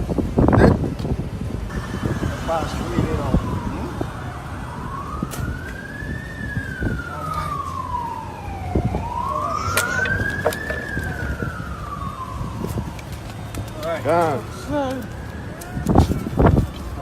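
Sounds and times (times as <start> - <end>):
low rumble: 1.4 - 7.2
siren wailing: 1.7 - 17.0.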